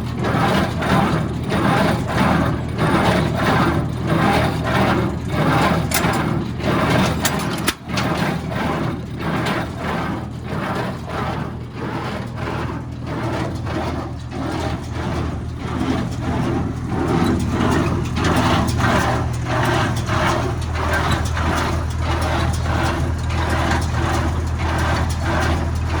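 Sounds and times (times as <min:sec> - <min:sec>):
tractor engine hum: 0:00.0 - 0:26.0.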